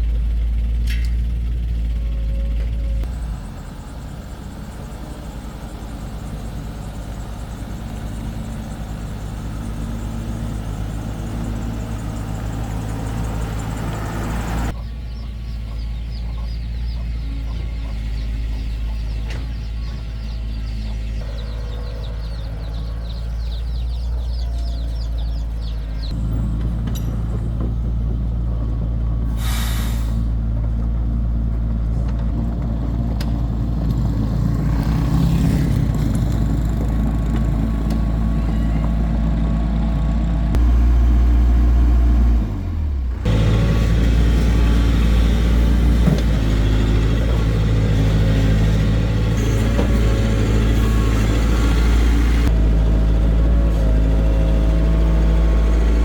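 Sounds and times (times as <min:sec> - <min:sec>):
heavy diesel engine running: 0:00.0 - 0:56.0
hiss of released air: 0:29.3 - 0:30.3.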